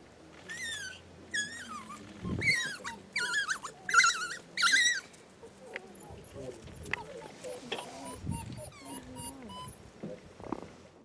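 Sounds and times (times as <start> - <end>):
wild dogs twittering: 0.5 - 5.1, 5.8 - 9.9.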